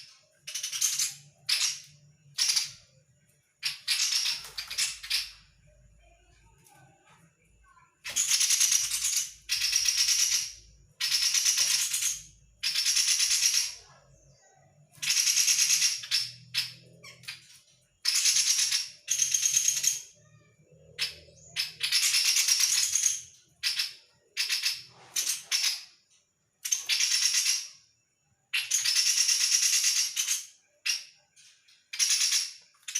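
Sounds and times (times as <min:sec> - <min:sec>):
bird harsh rattling chatters: 0:03.6 - 0:05.5, 0:08.0 - 0:13.9.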